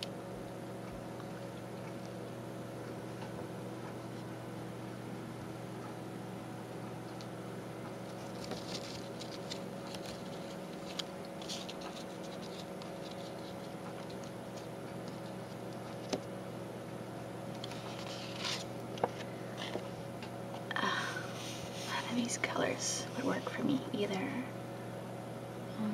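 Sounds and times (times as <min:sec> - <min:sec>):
steady low hum: 0:00.0 - 0:25.9.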